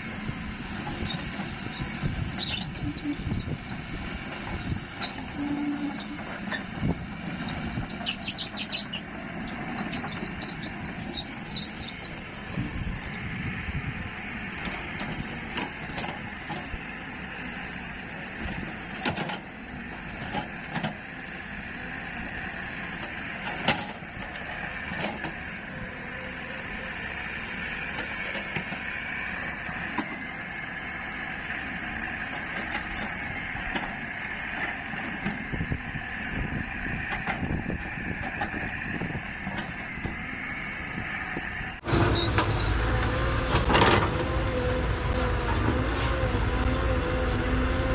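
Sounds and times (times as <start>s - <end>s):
heavy machinery running: 0.0s - 47.9s
loud machine: 21.5s - 47.9s.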